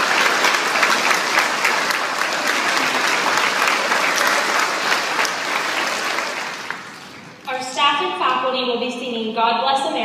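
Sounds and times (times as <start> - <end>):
crowd applauding: 0.0 - 7.4.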